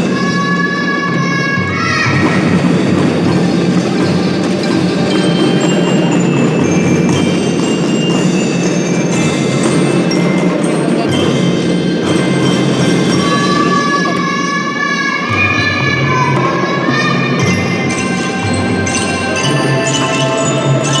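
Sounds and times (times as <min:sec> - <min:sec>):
continuous drumming: 0:00.0 - 0:21.0
bell lyres ringing a melody: 0:02.1 - 0:21.0.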